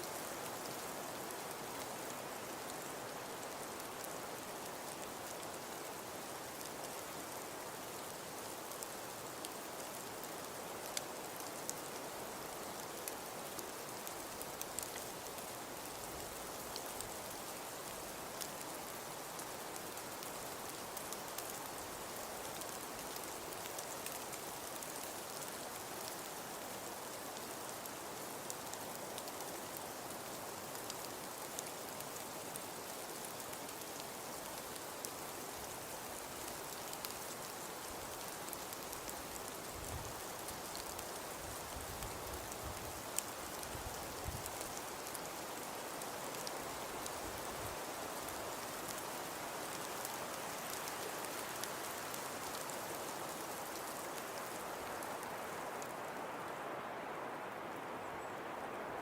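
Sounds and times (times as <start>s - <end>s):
hiss of falling snow: 0.0s - 59.0s
light ticks of snow landing: 30.7s - 56.6s.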